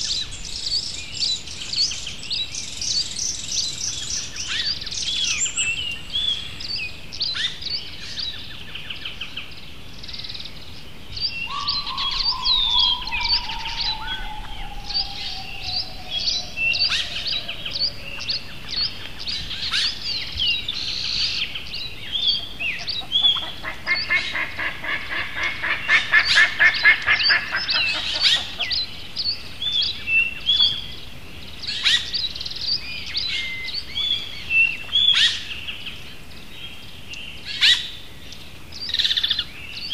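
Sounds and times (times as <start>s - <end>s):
birds chirping and warbling: 0.0s - 39.9s
fast rattling bird trill: 11.5s - 18.0s
long falling whistled note: 11.5s - 18.2s.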